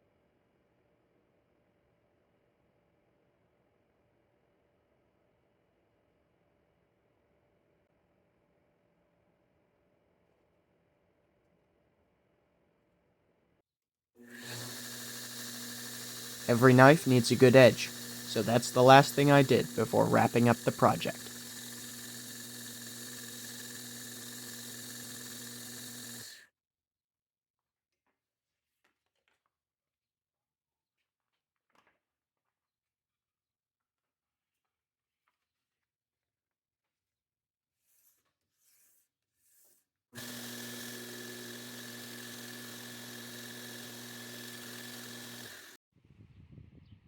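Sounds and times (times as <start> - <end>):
electric grinder sharpening knife: 14.3 - 26.4, 40.2 - 45.8
power tool motor running: 14.3 - 26.4, 40.2 - 45.8.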